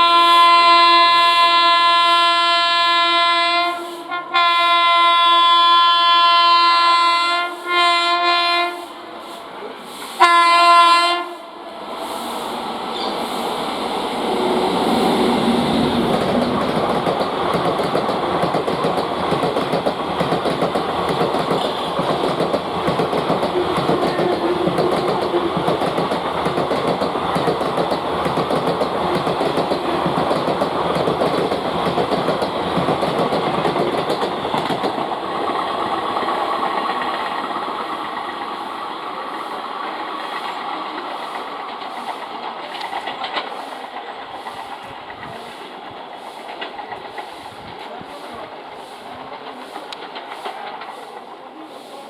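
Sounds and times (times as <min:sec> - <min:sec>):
train wheels clattering on track: 0:14.2 - 0:52.0.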